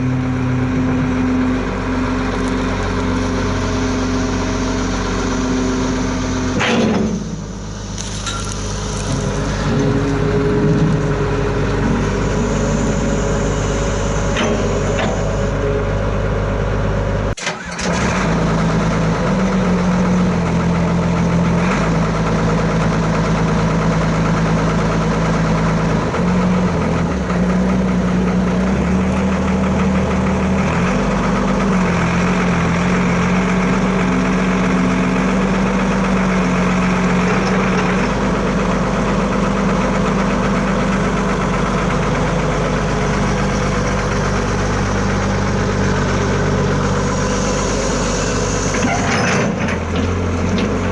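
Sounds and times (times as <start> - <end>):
excavator diesel engine running: 0.0 - 50.9.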